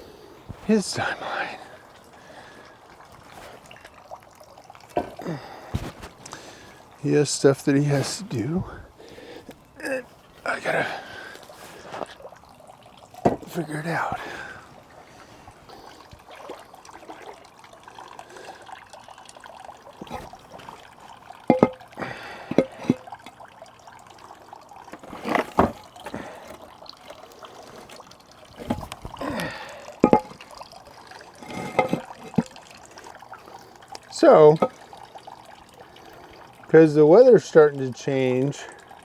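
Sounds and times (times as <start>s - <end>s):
water trickling and sloshing: 0.0s - 39.0s
stones splashing into water: 4.8s - 6.7s, 13.2s - 14.4s, 20.0s - 23.4s, 24.9s - 32.7s, 34.2s - 34.9s.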